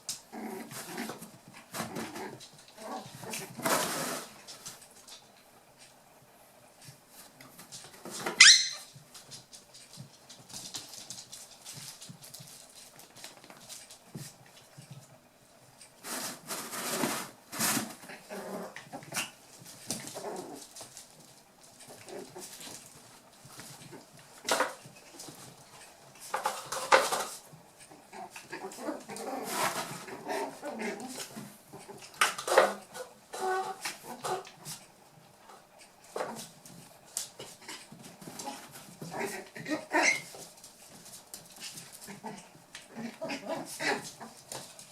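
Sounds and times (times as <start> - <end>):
puppies yipping and whimpering: 8.4 - 8.9.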